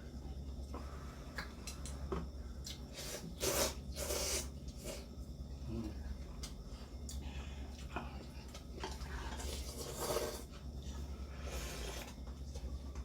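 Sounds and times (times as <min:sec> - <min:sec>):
steady low hum: 0:00.0 - 0:13.0
noodle slurping: 0:09.3 - 0:10.5.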